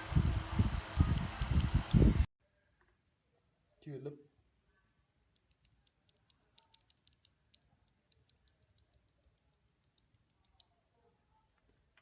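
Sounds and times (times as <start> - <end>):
mechanical keyboard typing: 0.0 - 2.0, 5.4 - 10.7.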